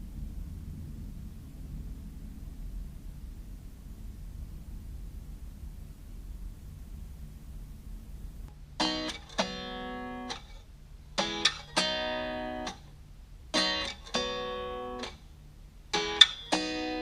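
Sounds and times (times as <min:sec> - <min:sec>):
faint hiss: 0:00.0 - 0:17.0
acoustic guitar strumming chords: 0:08.8 - 0:10.5, 0:11.2 - 0:12.8, 0:13.5 - 0:15.2, 0:15.9 - 0:17.0.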